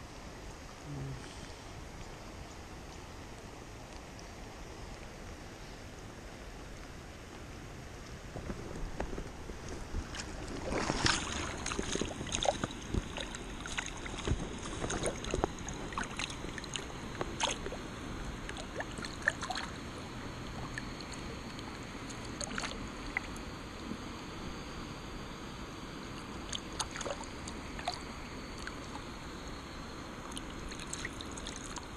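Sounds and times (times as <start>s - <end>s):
river water running: 0.0s - 24.4s, 26.0s - 31.9s
water splashes: 8.0s - 23.4s, 26.1s - 29.1s, 30.2s - 31.9s.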